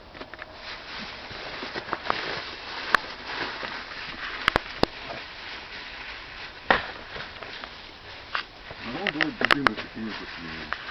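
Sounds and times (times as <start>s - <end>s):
campfire crackling: 0.0s - 10.9s
fire hissing: 0.5s - 10.9s
sharp fire pops: 6.6s - 10.0s.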